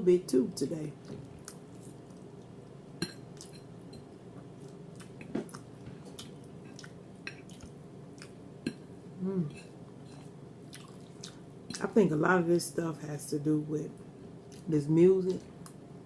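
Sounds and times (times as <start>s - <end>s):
chewing clicks and smacks: 10.7s - 11.4s.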